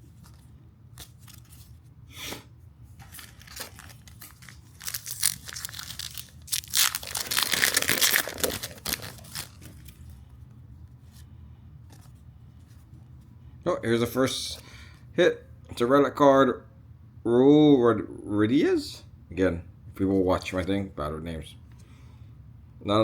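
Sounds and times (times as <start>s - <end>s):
foil wrapper tearing: 3.0s - 10.0s.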